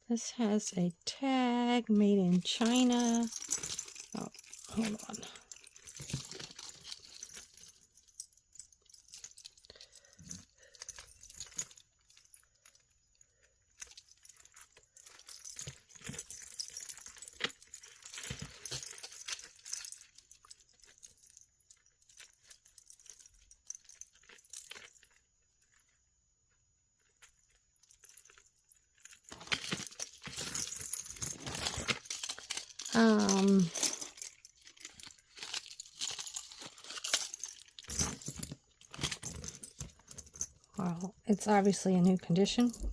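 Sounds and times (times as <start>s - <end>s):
jewelry clinking: 0.1s - 26.0s, 26.9s - 42.9s
plastic bag crinkling: 2.4s - 8.0s, 29.1s - 40.8s.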